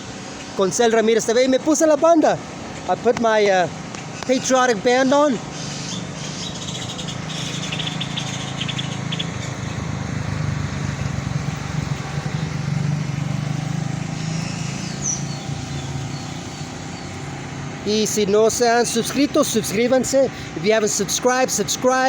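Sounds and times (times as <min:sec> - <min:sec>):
vehicle engine running: 0:00.0 - 0:22.0
high chirps: 0:05.5 - 0:09.8, 0:13.7 - 0:17.3.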